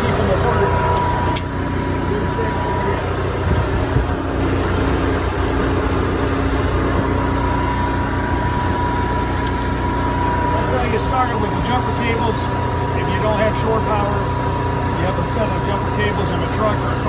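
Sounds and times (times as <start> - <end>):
generator running: 0.0 - 17.0
truck engine idling: 0.0 - 17.0
jumper cable clamp click: 0.9 - 1.5.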